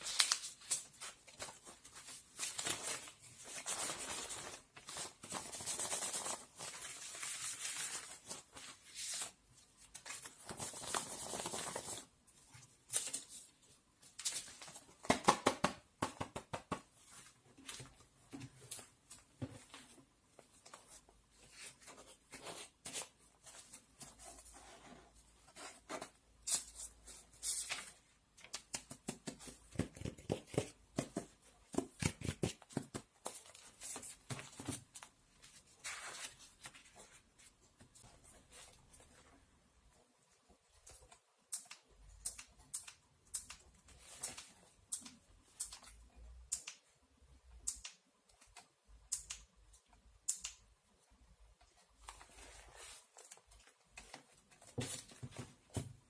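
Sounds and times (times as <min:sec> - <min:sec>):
rustling and crinkling: 0:51.7 - 0:56.0.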